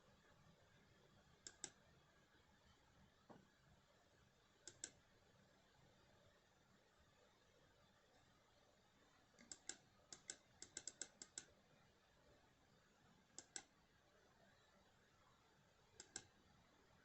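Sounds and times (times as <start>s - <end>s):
light clicks in pairs: 9.4s - 11.5s, 13.4s - 13.7s, 16.0s - 16.3s.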